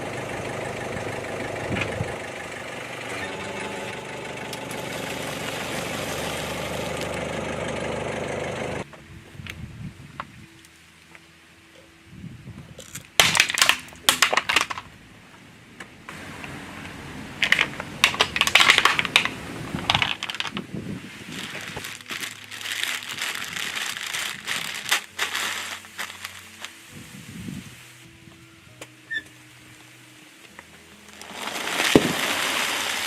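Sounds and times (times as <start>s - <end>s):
faint low engine hum: 0.0s - 10.4s, 14.9s - 20.0s
car tyre crushing crunchy objects: 2.9s - 8.8s, 12.8s - 14.9s, 16.1s - 26.7s, 31.1s - 33.0s.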